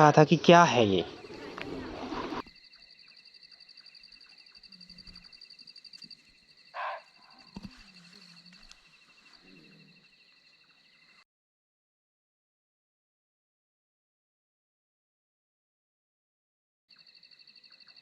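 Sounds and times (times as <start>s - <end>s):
faint low animal calls: 0.0s - 11.2s
night insects trilling: 0.0s - 11.2s, 16.9s - 18.0s.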